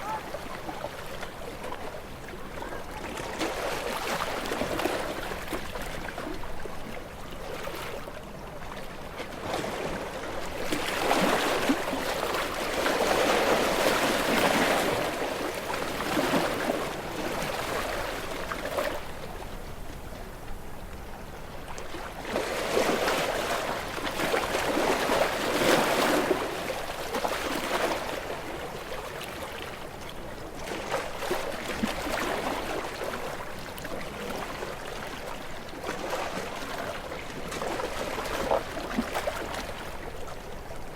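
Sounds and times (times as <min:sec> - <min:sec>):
ocean waves breaking over rocks: 0:00.0 - 0:21.0.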